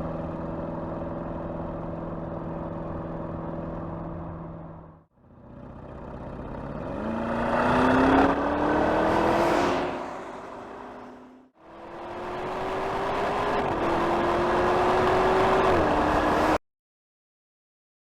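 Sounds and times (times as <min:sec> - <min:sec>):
car engine accelerating past: 0:06.4 - 0:16.6.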